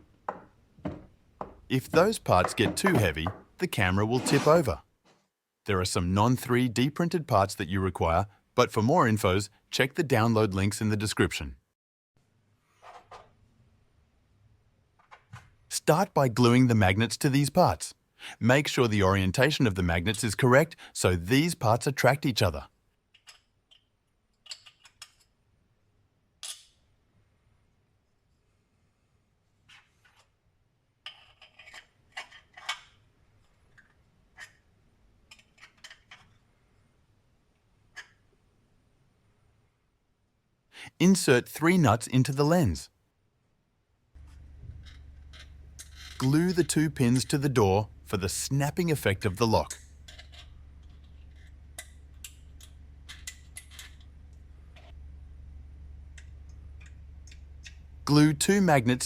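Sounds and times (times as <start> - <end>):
plastic parts clicking: 23.1 - 25.3, 35.3 - 36.4
small plastic parts clicking: 23.1 - 25.4, 35.3 - 36.4, 49.7 - 54.1.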